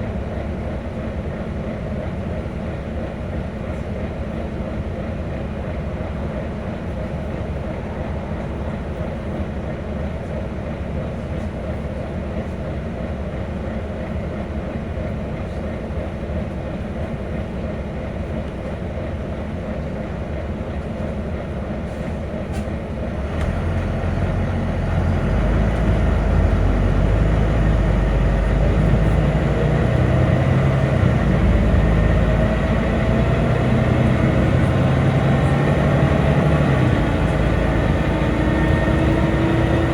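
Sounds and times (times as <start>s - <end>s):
bus engine rumble: 0.0s - 39.9s
rising engine whine: 23.2s - 39.9s.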